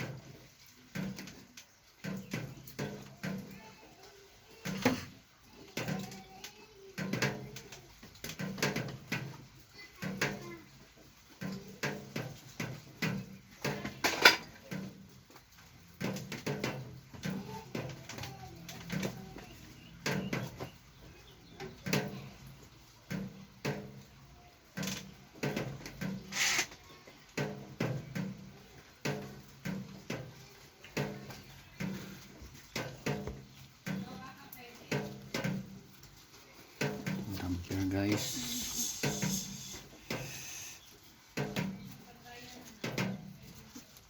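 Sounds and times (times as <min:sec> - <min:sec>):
short scraping hiss: 0:26.2 - 0:26.8, 0:38.2 - 0:41.1.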